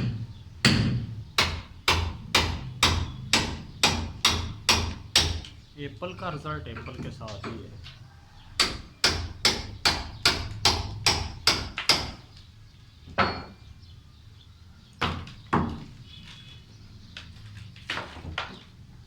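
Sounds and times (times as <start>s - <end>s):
hammer striking steel chisel: 0.0s - 5.5s, 8.6s - 12.2s.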